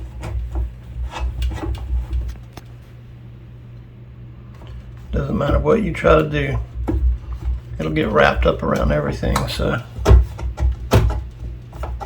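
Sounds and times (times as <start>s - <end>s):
rubbing scrapes: 0.0s - 2.4s.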